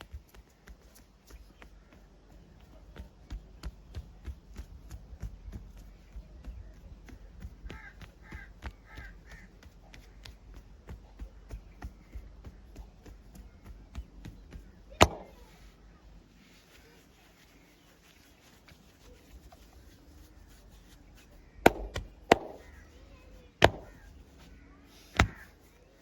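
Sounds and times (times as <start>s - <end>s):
body clicks and pops: 21.6s - 22.7s, 23.6s - 24.0s.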